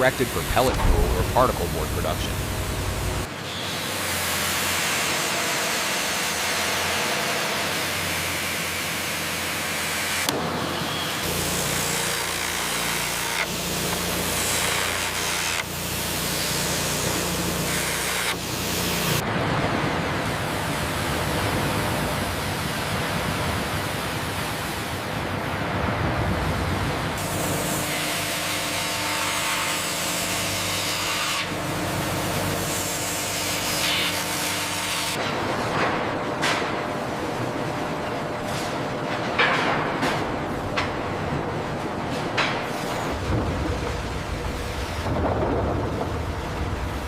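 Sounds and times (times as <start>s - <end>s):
sawmill machinery hissing: 0.0s - 6.9s
sawmill machinery rushing: 0.0s - 19.2s
low hum: 0.2s - 3.3s.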